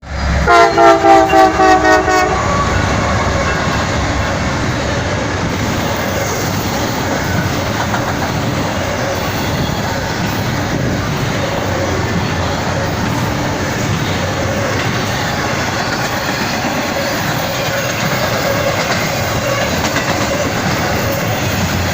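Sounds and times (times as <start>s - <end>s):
train rumbling and rattling past: 0.0s - 21.9s
train air horn blast: 0.4s - 3.4s.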